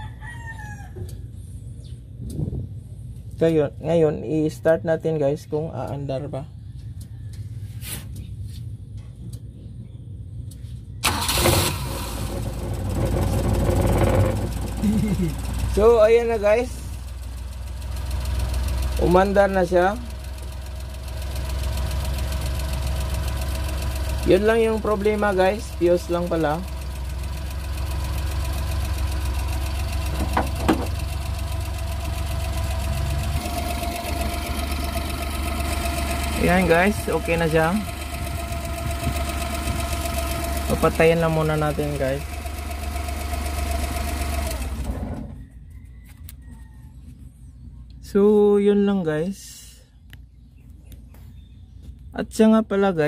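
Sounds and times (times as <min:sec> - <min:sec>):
engine cranking: 0:11.0 - 0:45.4
engine starting and running: 0:11.0 - 0:45.5.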